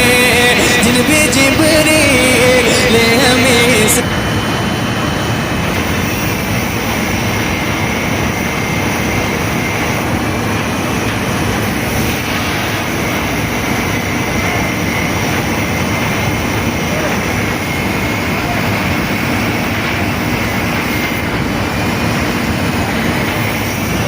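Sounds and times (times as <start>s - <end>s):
arc welding crackling hiss: 5.7s - 24.0s.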